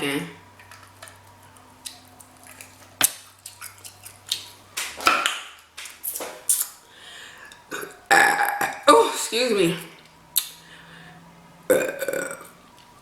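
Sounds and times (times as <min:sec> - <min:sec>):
person chewing with wet mouth smacking: 0:00.7 - 0:06.8.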